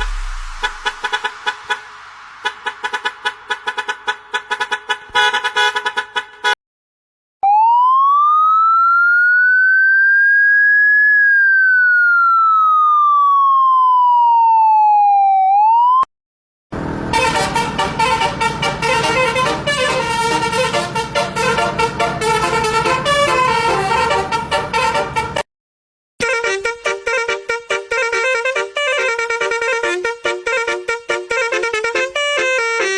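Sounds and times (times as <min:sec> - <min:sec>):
siren wail: 0:07.4 - 0:16.1.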